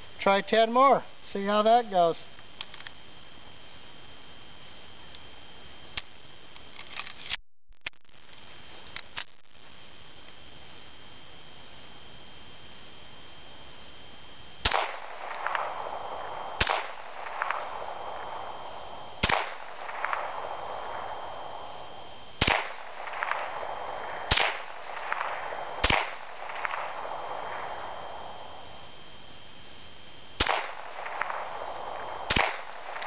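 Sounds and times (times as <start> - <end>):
pistol shots cracking: 14.6 - 28.8, 30.4 - 33.0
faint drawn-out echo: 14.7 - 33.0.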